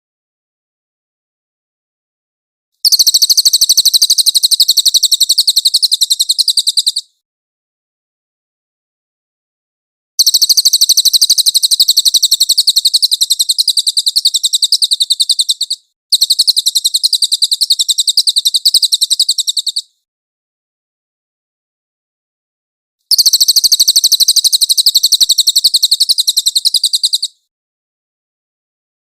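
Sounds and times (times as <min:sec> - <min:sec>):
bird singing rapid high notes: 0:02.8 - 0:07.1, 0:10.2 - 0:19.9, 0:23.1 - 0:27.3.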